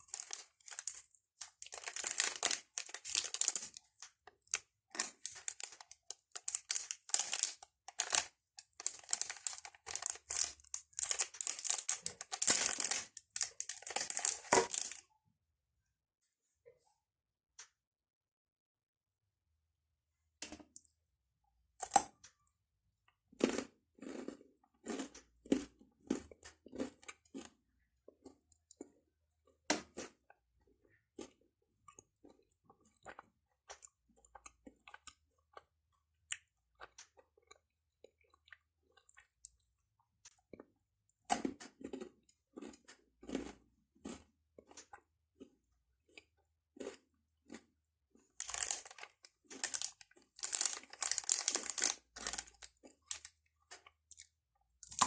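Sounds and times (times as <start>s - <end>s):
crunchy chewing: 0.0s - 15.0s, 23.4s - 29.0s, 41.5s - 55.0s
crisp bites into chocolate: 0.1s - 15.0s, 48.4s - 53.3s.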